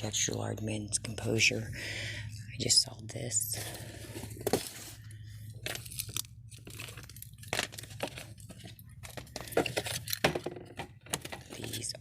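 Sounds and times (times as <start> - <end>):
steady low hum: 0.0 - 12.0
rustling and crinkling: 3.4 - 12.0.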